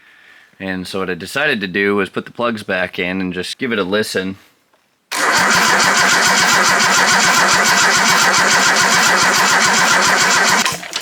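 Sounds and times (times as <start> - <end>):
engine cranking on starter: 5.1 - 11.0.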